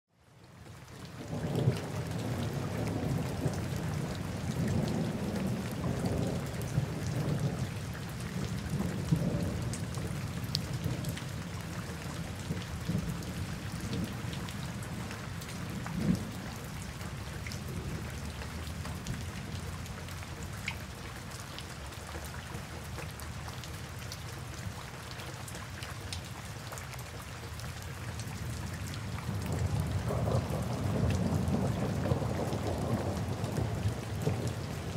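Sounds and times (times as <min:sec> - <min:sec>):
heavy rain pattering: 0:00.2 - 0:34.9
thunder rumbling: 0:29.2 - 0:34.9
thunder crack: 0:30.1 - 0:34.5.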